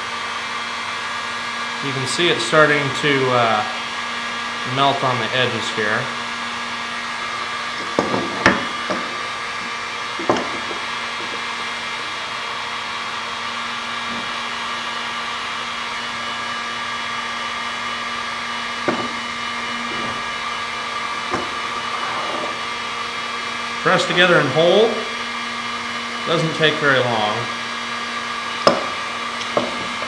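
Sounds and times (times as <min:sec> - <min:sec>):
heat gun blowing: 0:00.0 - 0:30.0.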